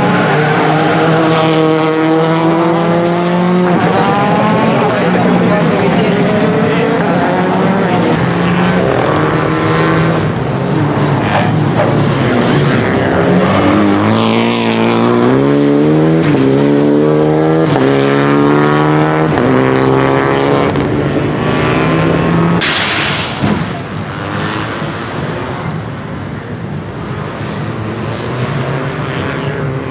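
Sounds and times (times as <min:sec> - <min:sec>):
rally car engine shifting gears: 0:00.0 - 0:25.3
short rush of noise: 0:22.6 - 0:24.4.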